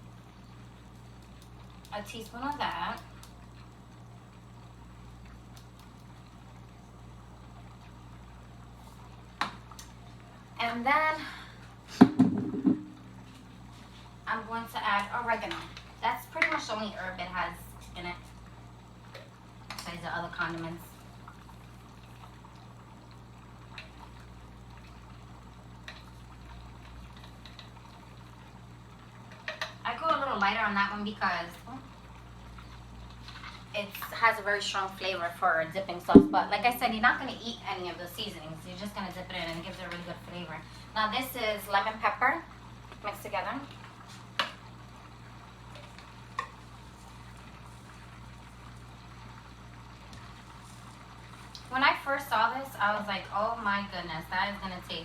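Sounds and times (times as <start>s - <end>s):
water boiling in pots: 0.0s - 55.0s
low hum: 36.1s - 36.9s.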